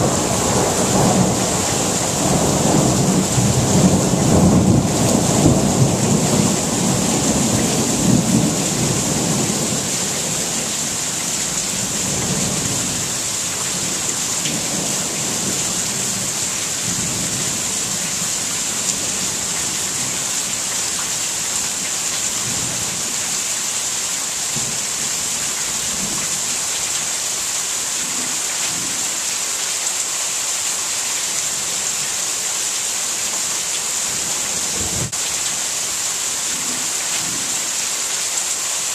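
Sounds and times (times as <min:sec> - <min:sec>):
thunder rumbling: 0:00.0 - 0:10.7
rain falling: 0:00.0 - 0:38.9.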